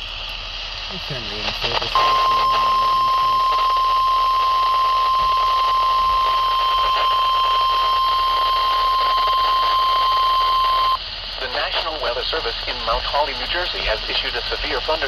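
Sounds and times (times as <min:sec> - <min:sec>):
radio hiss: 0:00.0 - 0:15.0
steady alarm tone: 0:01.2 - 0:11.0.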